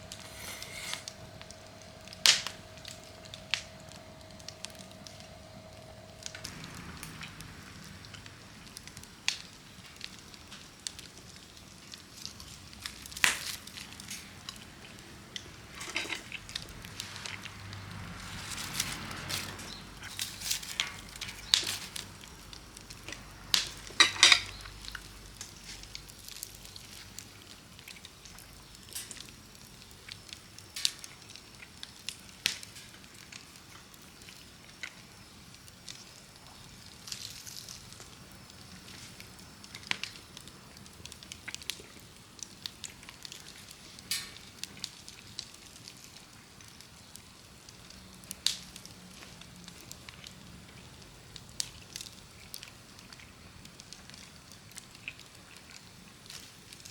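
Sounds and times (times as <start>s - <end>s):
faint hiss: 0.0s - 31.2s
wood fire crackling and popping: 0.0s - 56.9s.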